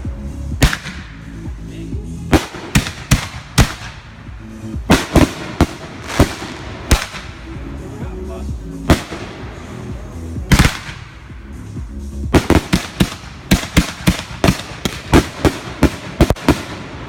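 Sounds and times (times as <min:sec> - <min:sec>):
background music: 0:00.0 - 0:17.0
fireworks bangs: 0:00.6 - 0:01.4, 0:02.3 - 0:07.8, 0:08.8 - 0:11.4, 0:12.3 - 0:17.0.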